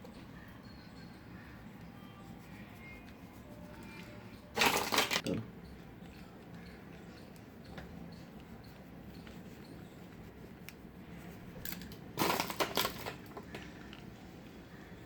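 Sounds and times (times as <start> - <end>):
kitchen clatter: 4.6 - 5.4, 11.7 - 13.5
small kitchen clicks: 4.6 - 5.4, 11.6 - 14.1.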